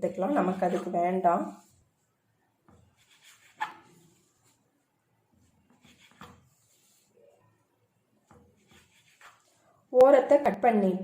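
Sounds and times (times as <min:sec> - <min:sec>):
knife cutting bread crusts: 0:02.8 - 0:04.0, 0:05.7 - 0:07.0, 0:08.4 - 0:09.6.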